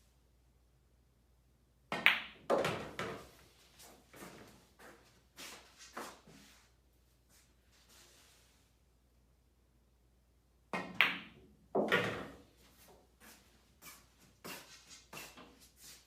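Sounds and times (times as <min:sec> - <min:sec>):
pool balls clacking: 0:10.8 - 0:12.4.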